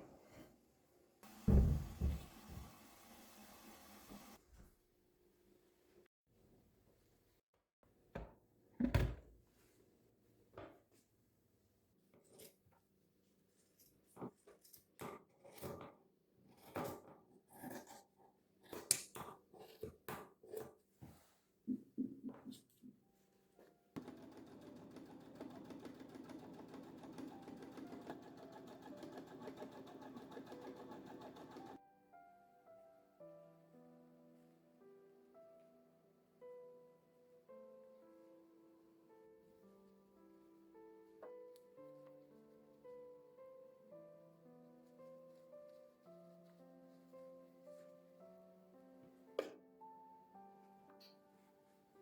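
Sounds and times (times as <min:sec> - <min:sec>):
objects knocking when set down: 0:01.4 - 0:02.7
sewing machine stitching: 0:24.0 - 0:31.8
soft instrumental music: 0:26.2 - 0:52.0.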